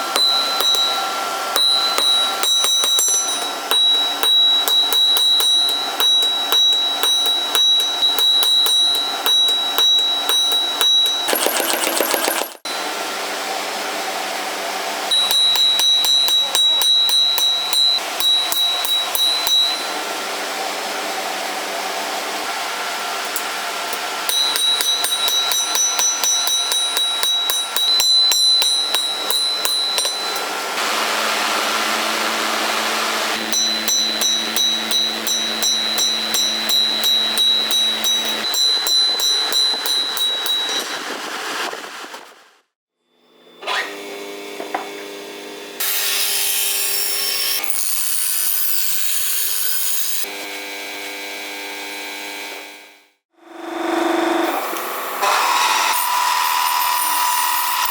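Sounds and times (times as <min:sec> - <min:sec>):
hammer striking steel on anvil: 0:00.0 - 0:12.8, 0:15.1 - 0:20.3, 0:23.2 - 0:30.9, 0:33.2 - 0:41.4
rapid metallic tapping: 0:00.1 - 0:12.6, 0:23.3 - 0:30.5, 0:33.4 - 0:42.3.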